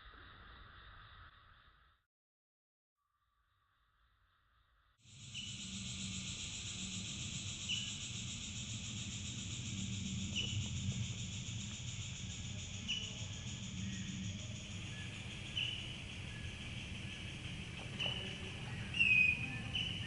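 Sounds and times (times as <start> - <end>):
insects chorus: 5.1 - 20.0.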